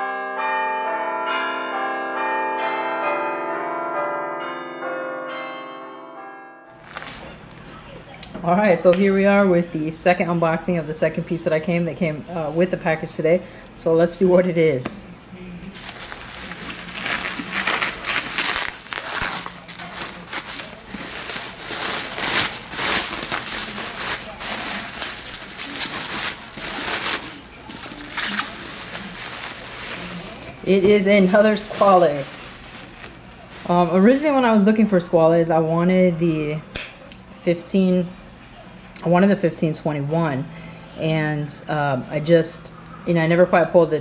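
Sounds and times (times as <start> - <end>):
packaging crinkling and rustling: 6.7 - 7.9, 15.6 - 34.4.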